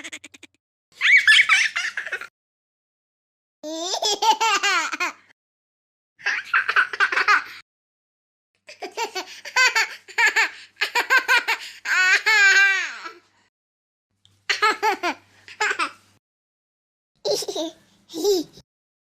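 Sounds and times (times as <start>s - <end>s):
high-pitched silly laughter: 0.0s - 2.3s.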